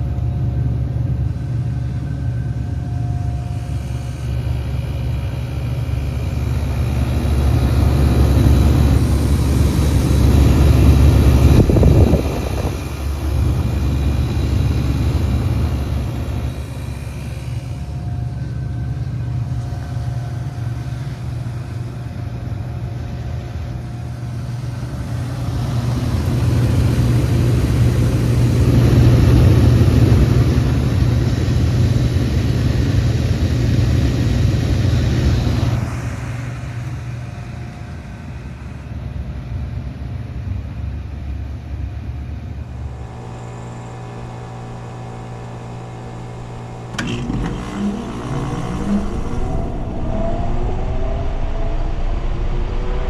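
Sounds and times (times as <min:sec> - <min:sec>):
heat pump humming and rushing: 0:00.0 - 0:53.0
quieter heat pump hum: 0:00.0 - 0:53.0
clicks: 0:46.9 - 0:49.4.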